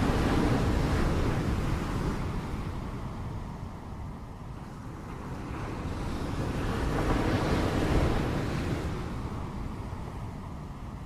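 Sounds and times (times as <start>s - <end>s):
wind rumbling on microphone: 0.0s - 11.0s.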